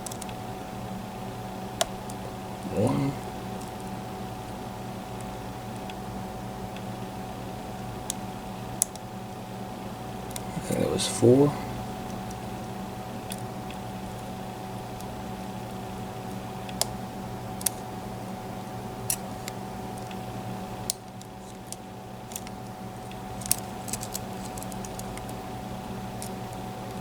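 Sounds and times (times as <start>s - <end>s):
steady low hum: 0.0s - 27.0s
lock pick clicking pins: 23.2s - 25.4s.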